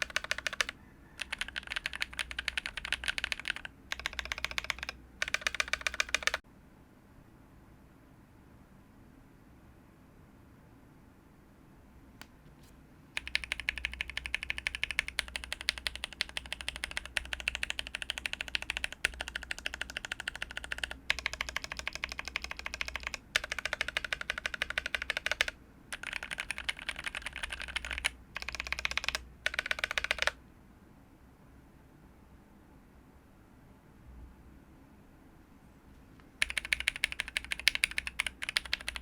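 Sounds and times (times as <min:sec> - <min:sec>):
fast typing on mechanical keyboard: 0:00.0 - 0:06.4, 0:13.2 - 0:30.4, 0:36.4 - 0:39.0.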